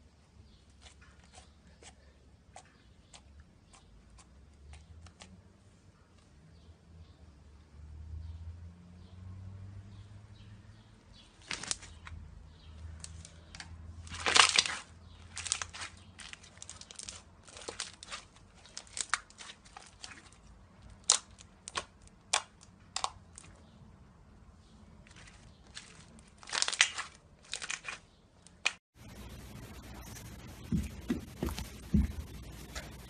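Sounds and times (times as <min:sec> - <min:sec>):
slime squelch: 0:00.7 - 0:05.4, 0:13.0 - 0:23.6
slime crackling and popping: 0:14.1 - 0:23.5, 0:25.7 - 0:28.8.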